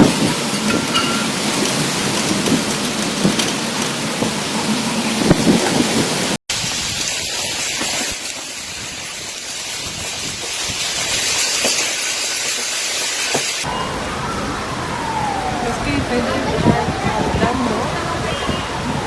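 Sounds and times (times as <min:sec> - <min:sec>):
heavy rain and hail: 0:00.0 - 0:13.7
siren wailing: 0:13.6 - 0:18.0.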